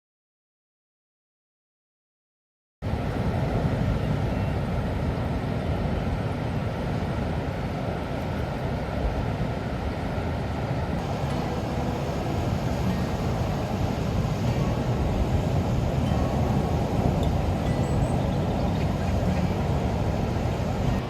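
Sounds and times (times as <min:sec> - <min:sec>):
vehicle rumble: 0:11.0 - 0:21.0.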